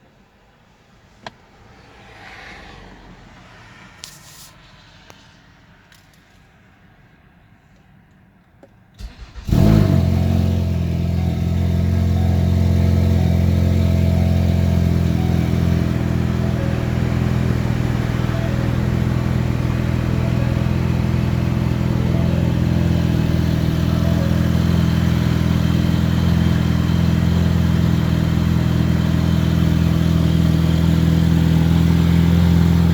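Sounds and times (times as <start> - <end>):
car engine starting and idling: 8.9 - 32.9.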